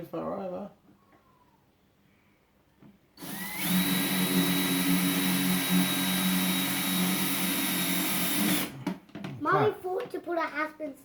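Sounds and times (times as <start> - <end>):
power drill driving a screw: 3.2 - 8.9.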